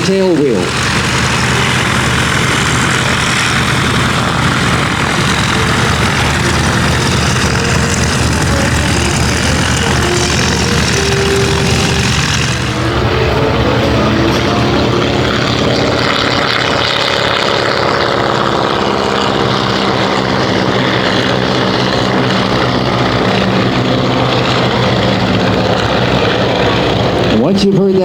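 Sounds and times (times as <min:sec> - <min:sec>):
propeller plane engine running: 0:00.0 - 0:28.0.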